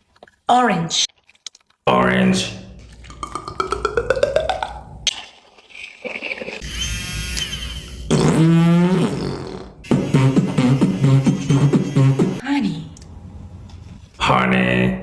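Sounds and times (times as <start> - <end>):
beatboxing mouth sound effects: 3.1 - 4.9, 7.4 - 12.4.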